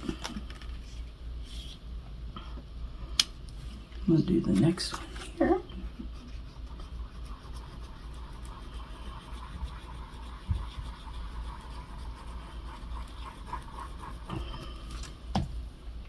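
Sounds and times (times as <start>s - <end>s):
steady low hum: 0.0s - 16.0s
paper scratching and rustling: 6.1s - 15.2s.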